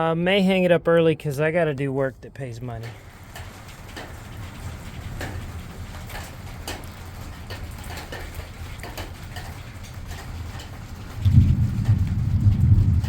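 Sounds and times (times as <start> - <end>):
light clicks and taps: 2.8 - 12.7.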